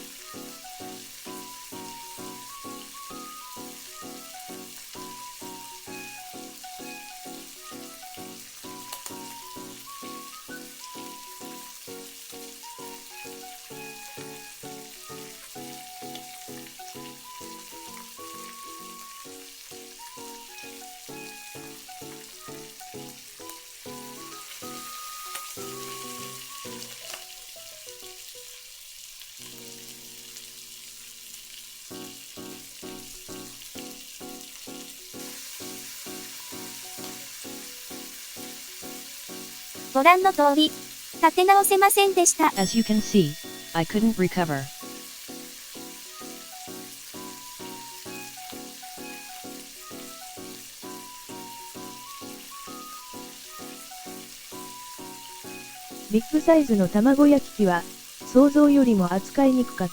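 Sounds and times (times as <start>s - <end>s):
background music with quick beat: 0.0s - 19.3s, 39.7s - 59.9s
egg sizzling in a frying pan: 0.0s - 59.9s.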